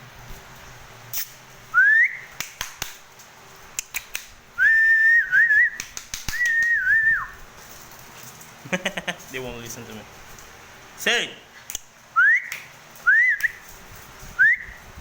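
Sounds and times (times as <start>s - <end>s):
person whistling: 1.8s - 2.3s, 4.6s - 7.4s, 12.2s - 13.6s, 14.4s - 14.8s
sharp clicks: 3.8s - 4.4s, 5.8s - 6.8s.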